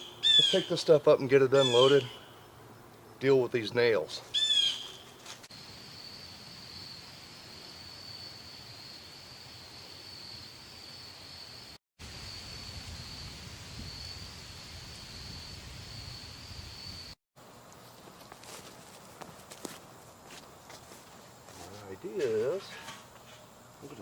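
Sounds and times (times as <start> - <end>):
insects trilling: 0.0 - 24.0.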